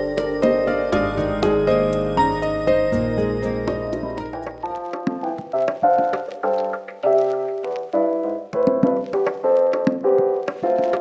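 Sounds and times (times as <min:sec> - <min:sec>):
piano-like keyboard melody: 0:00.0 - 0:11.0.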